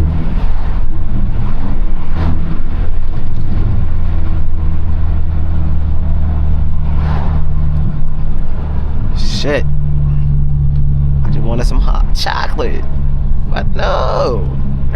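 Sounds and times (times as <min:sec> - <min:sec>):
car engine drone from cabin: 0:00.0 - 0:14.9
road noise: 0:00.0 - 0:14.9.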